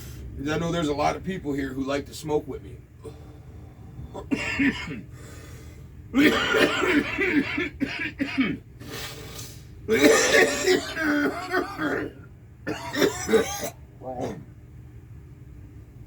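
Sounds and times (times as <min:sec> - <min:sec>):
man coughing: 0:04.2 - 0:05.1, 0:06.2 - 0:08.6, 0:09.9 - 0:14.5.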